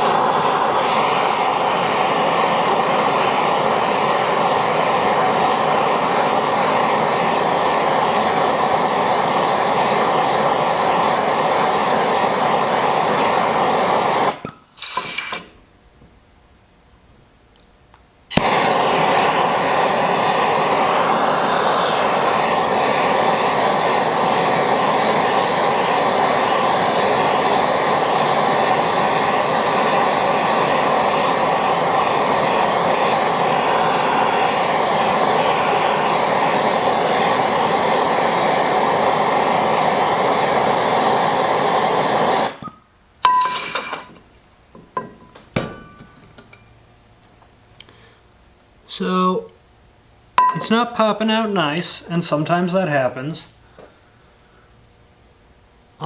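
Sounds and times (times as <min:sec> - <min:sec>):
gas torch hissing: 0:00.0 - 0:16.0, 0:18.2 - 0:46.7.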